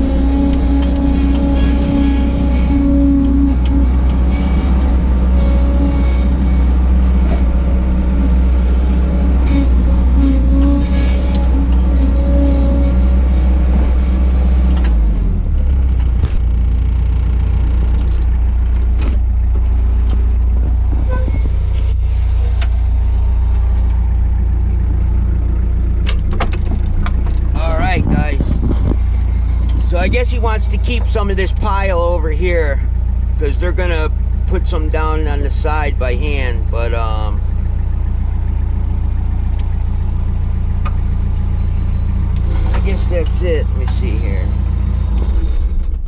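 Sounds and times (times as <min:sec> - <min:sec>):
low engine drone: 0:00.0 - 0:46.0
knocks and clanks: 0:26.0 - 0:29.9.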